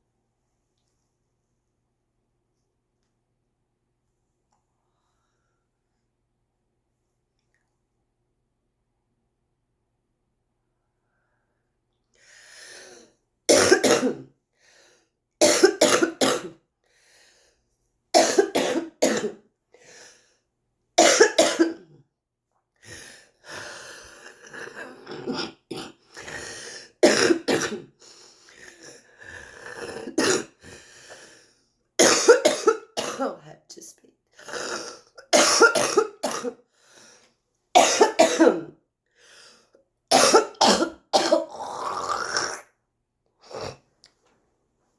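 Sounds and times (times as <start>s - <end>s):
person coughing harshly: 13.5s - 14.3s, 15.4s - 16.6s, 18.2s - 19.4s, 21.0s - 21.9s, 27.0s - 28.0s, 29.9s - 30.6s, 32.0s - 33.5s, 34.5s - 36.6s, 37.8s - 38.8s, 40.1s - 41.7s.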